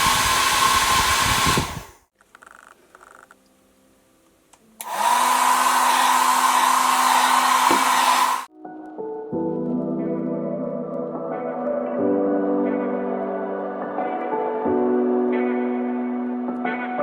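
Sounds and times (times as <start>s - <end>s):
hair dryer blowing: 0.0s - 2.1s, 4.8s - 8.5s.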